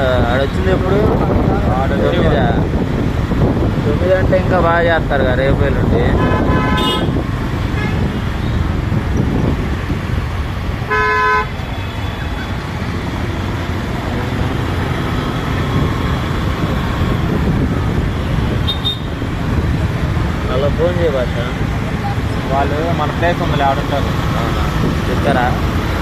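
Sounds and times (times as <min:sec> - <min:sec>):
road traffic: 0:00.0 - 0:26.0
car horn toot: 0:06.2 - 0:07.2, 0:10.9 - 0:12.6, 0:18.6 - 0:19.2.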